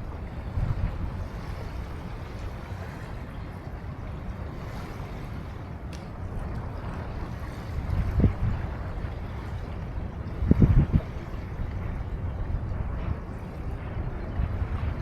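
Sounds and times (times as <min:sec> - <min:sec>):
wind: 0:00.0 - 0:15.0
small click: 0:05.9 - 0:06.1.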